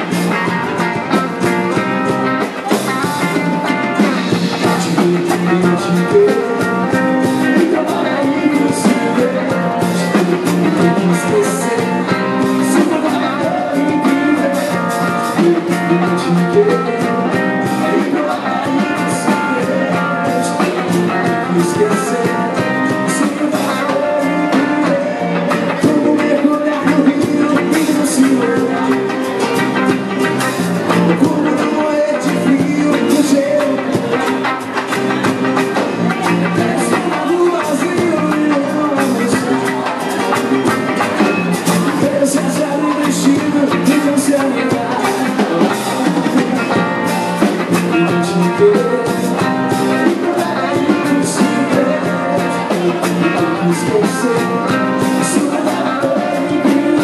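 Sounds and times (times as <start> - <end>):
drum kit beat: 0.0 - 57.0
electric guitar: 0.0 - 57.0
person singing: 0.0 - 57.0.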